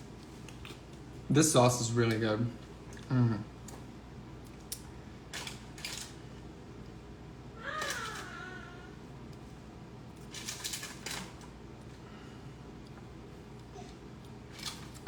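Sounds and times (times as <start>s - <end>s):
cat meowing: 7.6s - 8.9s.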